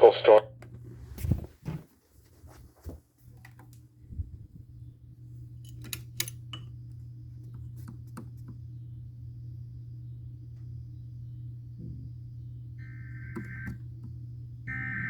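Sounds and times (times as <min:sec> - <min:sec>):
radio receiver low hum: 0:00.0 - 0:01.5, 0:08.5 - 0:15.0.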